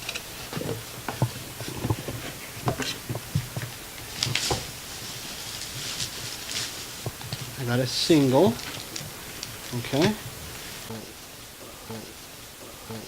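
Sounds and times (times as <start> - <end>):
packaging rustle: 0.1 - 10.8.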